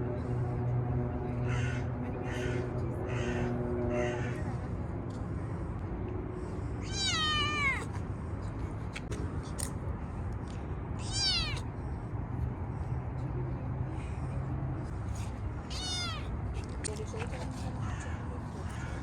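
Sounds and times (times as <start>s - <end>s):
kitten meowing: 6.8s - 7.9s, 11.0s - 11.6s, 15.7s - 16.3s.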